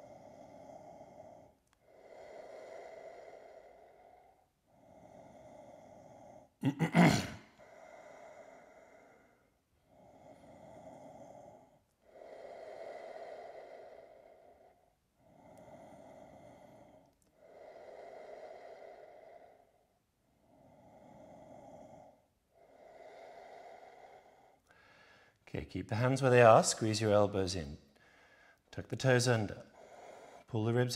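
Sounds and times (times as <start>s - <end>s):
person breathing slowly: 0.0s - 30.9s.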